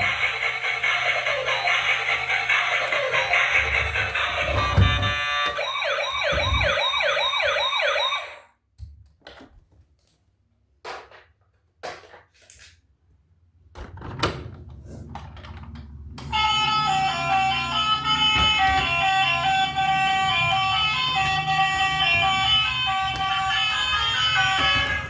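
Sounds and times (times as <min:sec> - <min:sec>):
electronic siren wailing: 0:00.0 - 0:08.4, 0:16.3 - 0:25.0.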